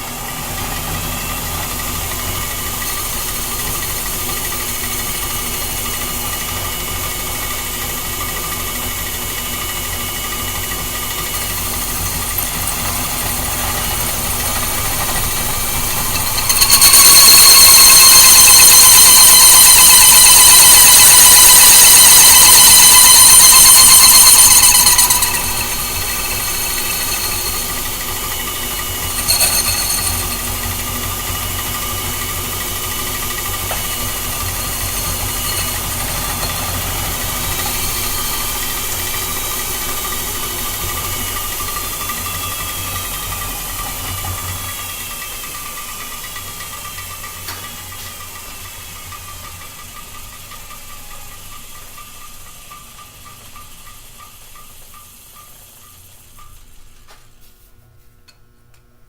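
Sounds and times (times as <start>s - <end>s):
metal lathe running: 0.0s - 50.4s
loud high squeal: 11.2s - 45.5s.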